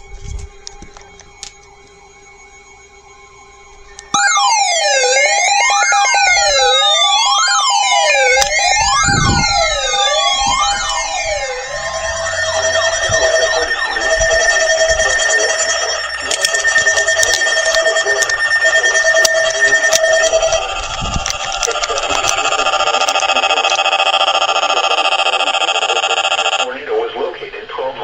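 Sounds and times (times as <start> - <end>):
emergency vehicle sirens wailing: 0.0 - 28.0
clicks: 8.2 - 26.6.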